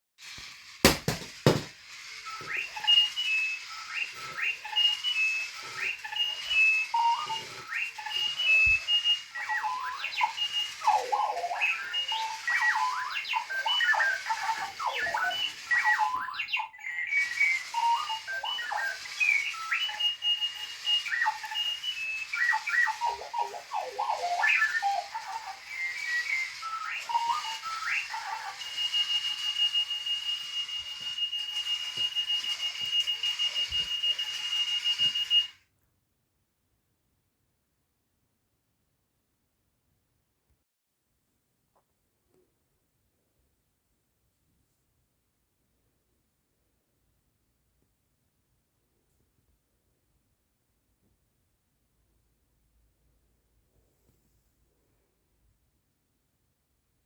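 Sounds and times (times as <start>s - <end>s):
sharp knocks: 0.9s - 1.7s
electronic alarm clock beeps and chirps: 0.9s - 35.6s.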